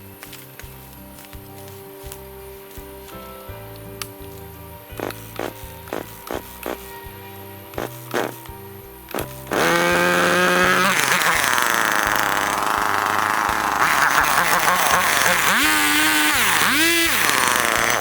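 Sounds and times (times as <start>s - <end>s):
chainsaw running: 5.0s - 6.9s, 7.8s - 8.5s, 9.1s - 18.0s.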